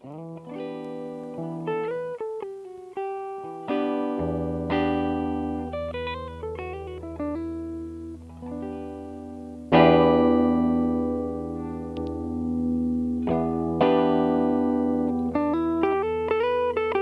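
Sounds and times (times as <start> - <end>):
electric guitar notes and chords: 0.0 - 17.0.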